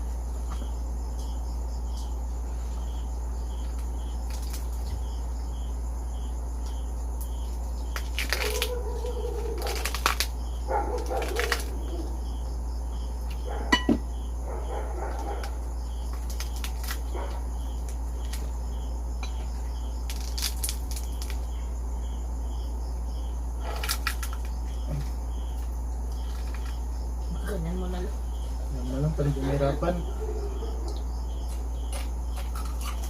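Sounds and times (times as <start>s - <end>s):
cricket chirping: 0.0s - 33.0s
steady low hum: 0.0s - 33.0s
crunching and chewing: 2.8s - 5.7s, 6.6s - 12.1s, 14.4s - 21.8s, 23.6s - 27.0s, 30.6s - 33.0s.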